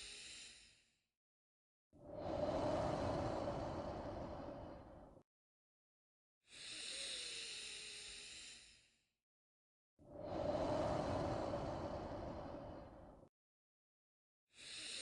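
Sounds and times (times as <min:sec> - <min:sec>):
slow human breathing: 0:02.0 - 0:05.2, 0:10.1 - 0:13.3.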